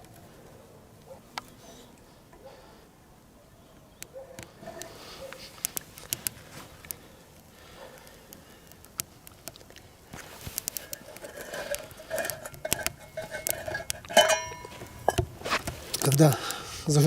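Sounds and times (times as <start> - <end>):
light rustling: 4.0 - 17.0
sharp clicks: 5.6 - 9.9, 10.5 - 11.2.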